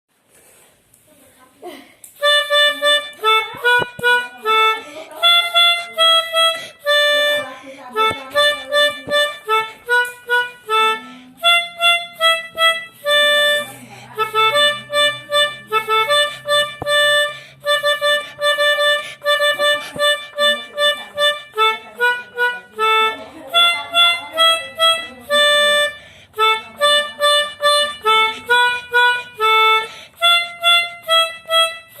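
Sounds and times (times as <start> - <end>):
melodica playing a tune: 2.2 - 32.0.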